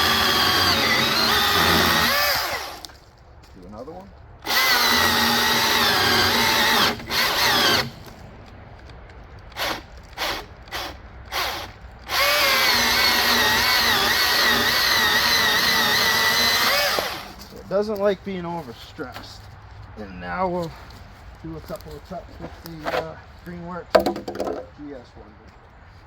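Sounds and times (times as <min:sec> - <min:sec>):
battery chainsaw cutting log: 0:00.0 - 0:03.0, 0:04.4 - 0:08.0, 0:09.5 - 0:17.6.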